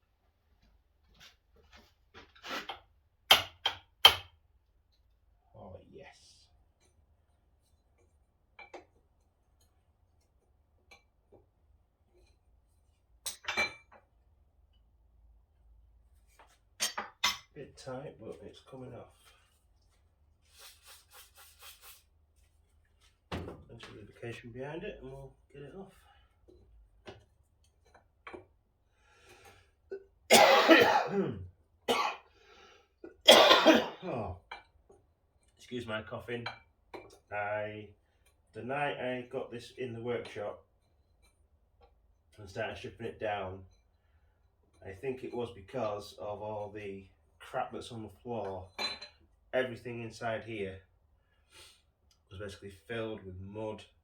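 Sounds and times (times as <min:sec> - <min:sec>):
man coughing: 0:30.3 - 0:32.2, 0:33.1 - 0:34.3.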